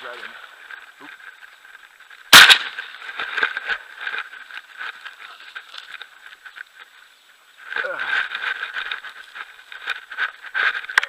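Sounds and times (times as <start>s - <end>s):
shotgun shot: 2.3s - 2.8s.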